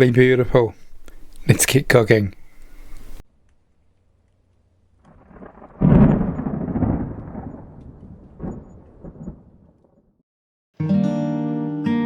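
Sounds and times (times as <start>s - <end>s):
thunder rumble: 5.0s - 10.2s
acoustic guitar music: 10.8s - 12.0s.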